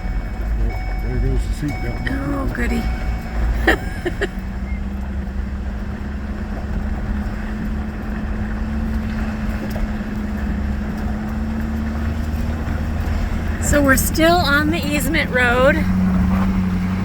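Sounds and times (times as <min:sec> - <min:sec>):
steady hum: 0:00.0 - 0:06.0
truck driving on gravel: 0:00.0 - 0:17.0.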